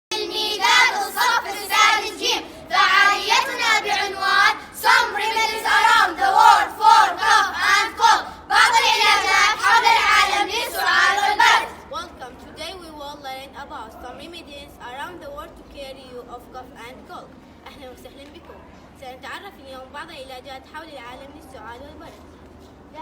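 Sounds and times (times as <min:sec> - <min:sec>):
children singing: 0:00.1 - 0:11.8.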